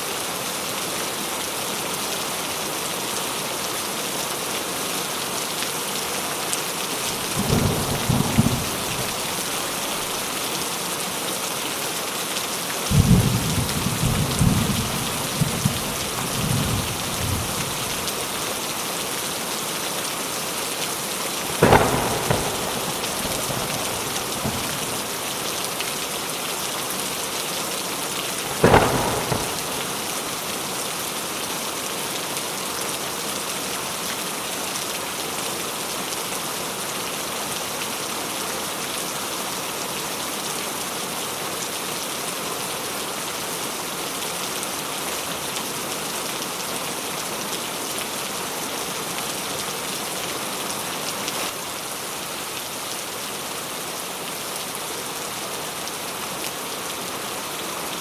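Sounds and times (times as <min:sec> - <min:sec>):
heavy rain falling: 0:00.0 - 0:58.0
thunderclap crack: 0:07.1 - 0:10.2, 0:21.5 - 0:25.5, 0:28.4 - 0:30.6.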